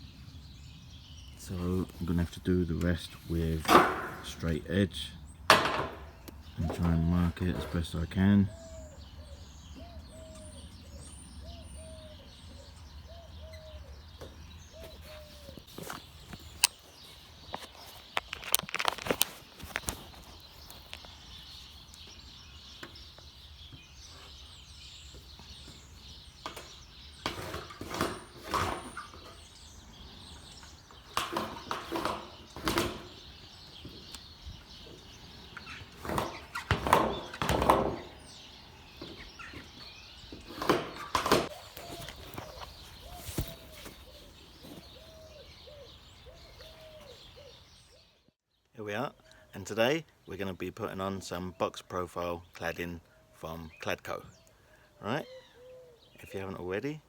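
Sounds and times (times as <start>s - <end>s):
birds chirping: 0.0s - 57.0s
scraping and handling noise: 1.8s - 4.6s, 14.8s - 21.8s, 25.5s - 34.3s, 39.0s - 45.3s.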